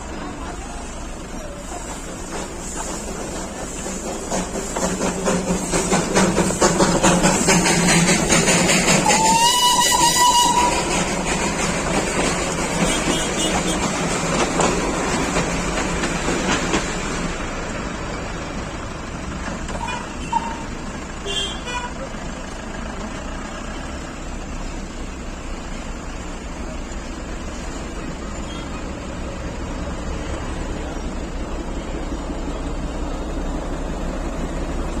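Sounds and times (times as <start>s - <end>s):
road traffic rumble: 0.0s - 35.0s
horn toots: 9.0s - 11.0s.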